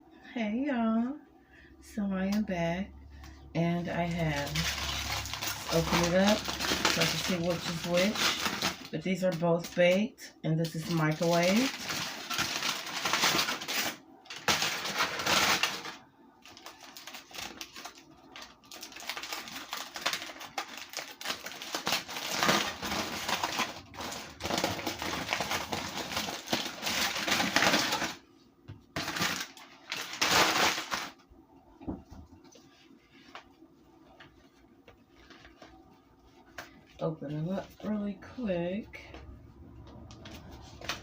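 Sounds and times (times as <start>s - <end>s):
crackling of breaking cornstarch: 11.2s - 28.2s, 29.0s - 31.2s.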